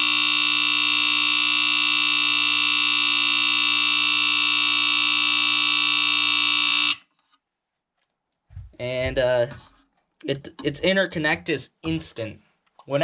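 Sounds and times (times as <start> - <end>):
smoke alarm tone: 0.0 - 7.0.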